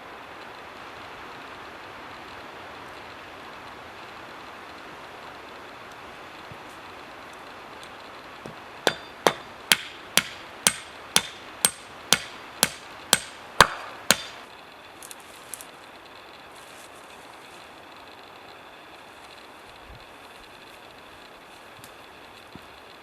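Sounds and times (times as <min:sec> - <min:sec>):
hammer blows with metallic ring: 0:08.9 - 0:14.4.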